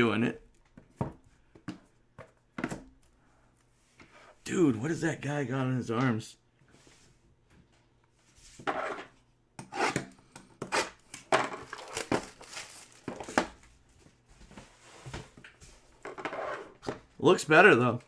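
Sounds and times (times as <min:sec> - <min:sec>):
cardboard and plastic rustling: 0:11.1 - 0:17.2.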